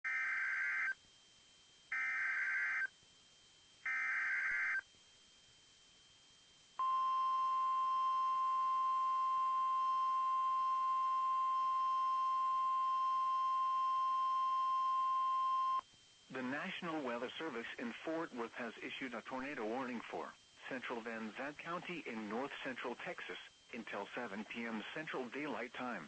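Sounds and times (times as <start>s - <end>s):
steady attention tone: 6.8s - 17.6s.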